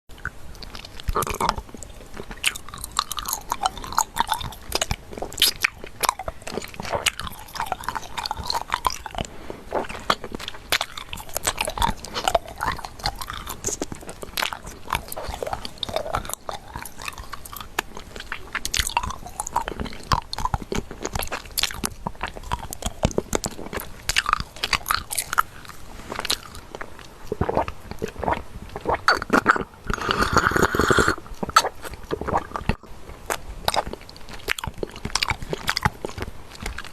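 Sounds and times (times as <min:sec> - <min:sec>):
crunching crackles and snaps: 0:00.1 - 0:30.1, 0:30.7 - 0:36.9.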